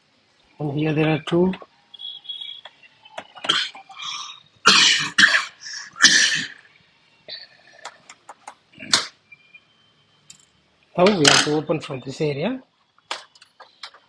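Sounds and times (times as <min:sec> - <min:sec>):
person coughing: 0:03.4 - 0:06.6.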